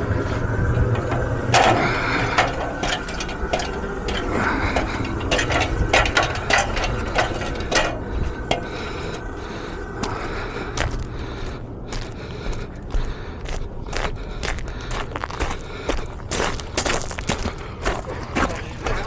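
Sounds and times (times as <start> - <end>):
sharp clicks and knocks: 0.0 - 9.3
low steady hum: 0.0 - 15.3.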